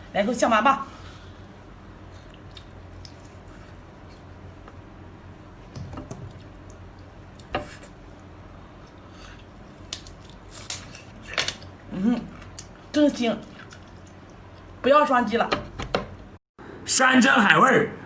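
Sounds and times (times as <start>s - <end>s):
low steady hum: 0.0s - 16.8s
utensils clicking and tapping: 15.5s - 16.3s.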